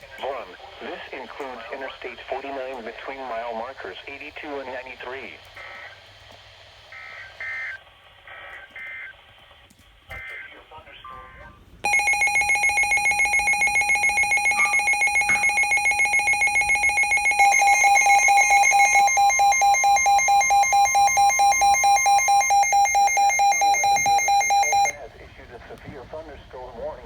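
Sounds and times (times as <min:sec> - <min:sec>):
higher electronic tone: 0:11.9 - 0:25.0
pulsing electronic alarm tone: 0:11.9 - 0:25.0.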